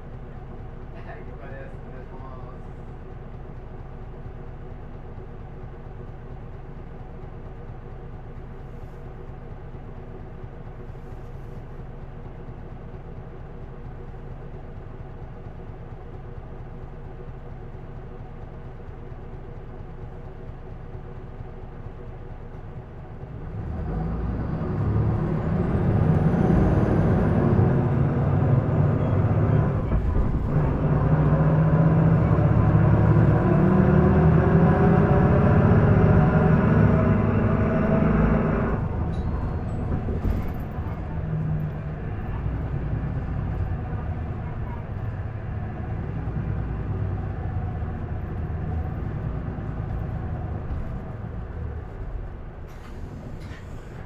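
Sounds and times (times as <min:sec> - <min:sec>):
bus diesel engine idling and revving: 0:00.0 - 0:54.0.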